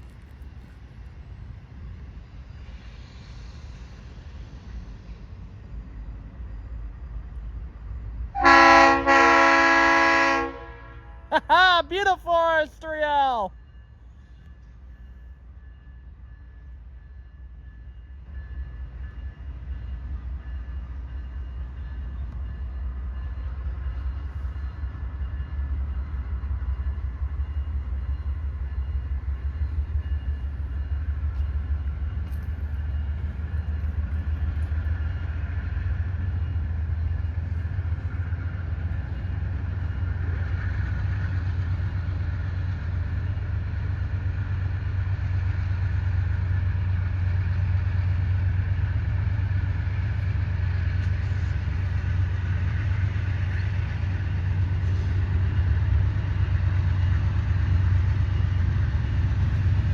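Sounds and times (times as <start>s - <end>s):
diesel locomotive rumbling: 0.0s - 59.9s.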